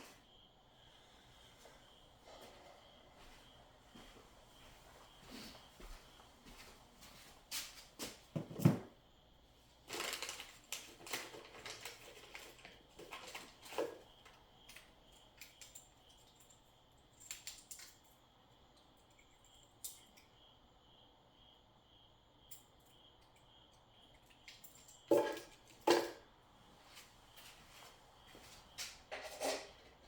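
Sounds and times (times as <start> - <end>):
packaging rustling and clicking: 9.9 - 13.6.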